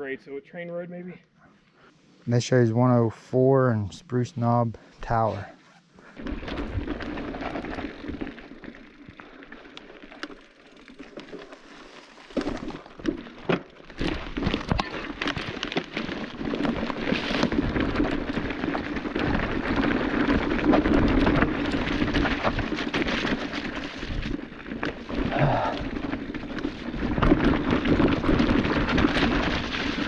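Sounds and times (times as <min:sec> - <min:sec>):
bike rattling over stones: 0:06.1 - 0:30.0
bike clicks: 0:06.2 - 0:30.0
tyres crunching on stones: 0:06.2 - 0:30.0.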